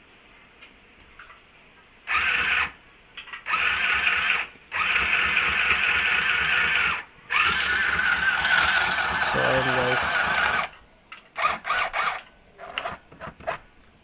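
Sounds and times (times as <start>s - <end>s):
sewing machine motor whine: 3.5s - 10.7s, 11.4s - 12.2s.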